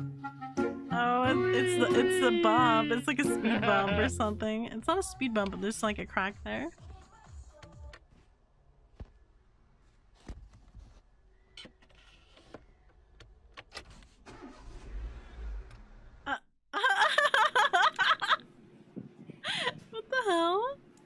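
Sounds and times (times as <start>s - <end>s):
high fast-wavering cries: 1.1s - 3.9s.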